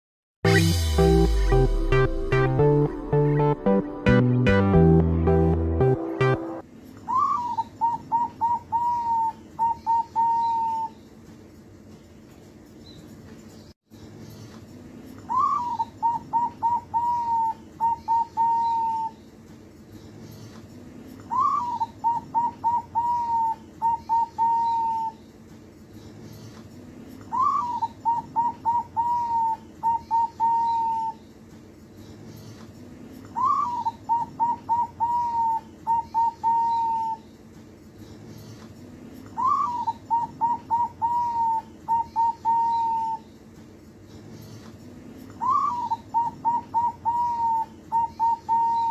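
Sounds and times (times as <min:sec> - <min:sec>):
dove cooing: 0:07.1 - 0:10.9, 0:15.3 - 0:19.2, 0:21.3 - 0:25.2, 0:27.3 - 0:31.2, 0:33.4 - 0:37.2, 0:39.4 - 0:43.2, 0:45.4 - 0:48.9.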